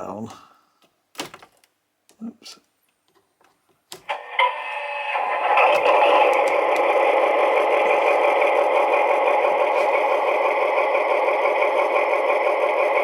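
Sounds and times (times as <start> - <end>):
diesel engine from small loudspeaker: 4.1 - 13.0.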